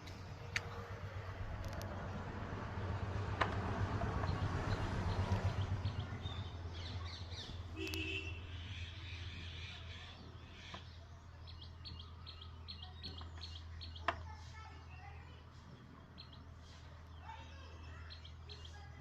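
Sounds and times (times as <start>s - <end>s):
birds chirping: 0.0s - 19.0s
bird squawk: 7.0s - 10.9s.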